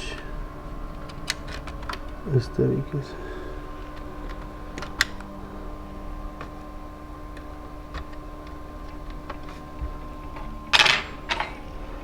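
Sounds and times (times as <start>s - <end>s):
faint hum: 0.0s - 12.0s
laptop parts clicking: 3.8s - 5.4s.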